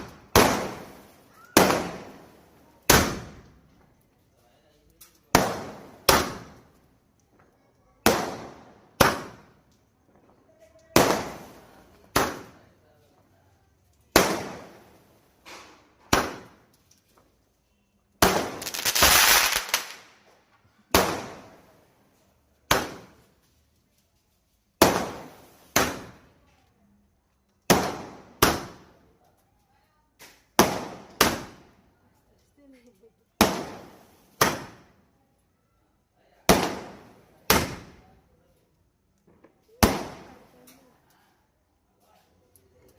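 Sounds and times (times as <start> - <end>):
firework bangs: 0.0 - 3.7, 5.3 - 6.8, 8.0 - 9.7, 10.9 - 12.8, 14.1 - 16.8, 18.2 - 22.0, 22.6 - 23.4, 24.8 - 26.4, 27.7 - 29.1, 30.2 - 31.8, 33.4 - 35.1, 36.4 - 38.2, 39.3 - 40.7.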